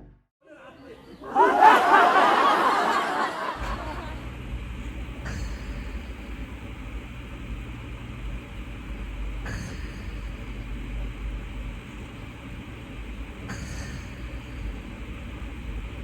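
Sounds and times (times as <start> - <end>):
person laughing: 0.5 - 4.2.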